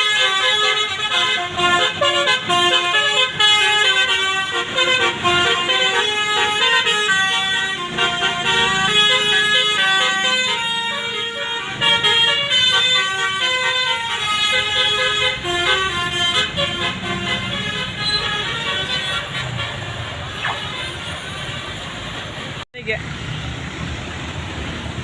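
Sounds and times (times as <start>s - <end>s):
multi-note air horn melody: 0.0s - 21.6s
engine and traffic rumble: 0.0s - 25.0s.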